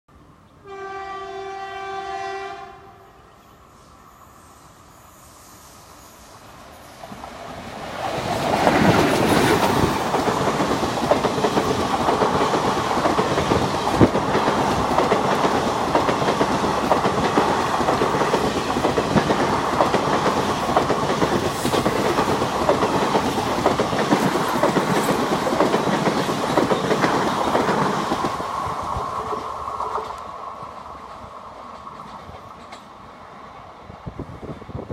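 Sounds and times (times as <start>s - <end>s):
train wheels clattering over rail joints: 7.1s - 28.4s.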